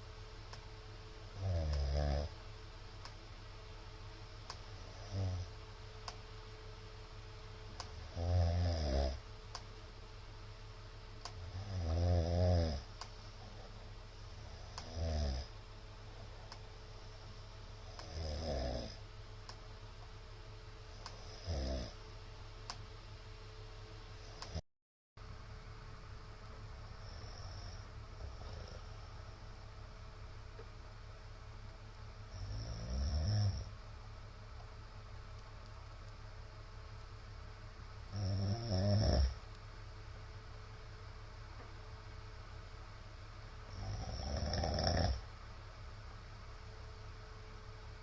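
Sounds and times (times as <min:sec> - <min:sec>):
faint steady hum: 0:00.0 - 0:24.6, 0:25.2 - 0:48.0
man snoring: 0:01.4 - 0:02.4, 0:04.8 - 0:05.5, 0:08.0 - 0:09.2, 0:11.4 - 0:12.9, 0:14.4 - 0:15.5, 0:17.8 - 0:19.0, 0:21.2 - 0:22.0, 0:27.0 - 0:29.1, 0:32.3 - 0:33.7, 0:38.1 - 0:39.4, 0:43.7 - 0:45.3.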